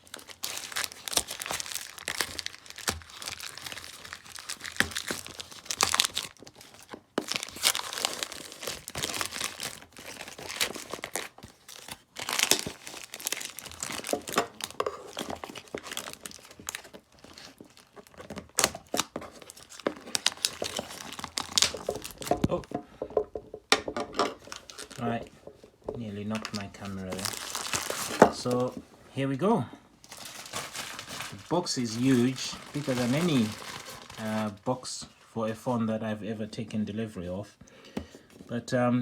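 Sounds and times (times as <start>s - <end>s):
packaging tearing and crinkling: 0.0s - 22.8s, 24.1s - 25.2s, 26.3s - 28.8s, 30.0s - 34.7s.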